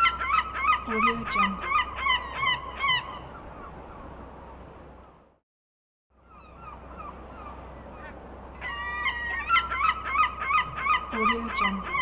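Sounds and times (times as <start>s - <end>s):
faint seagull calls: 0.0s - 4.1s, 6.2s - 12.0s.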